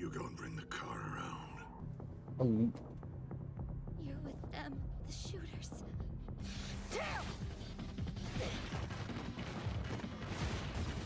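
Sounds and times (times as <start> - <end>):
low soundtrack music: 0.0 - 10.9.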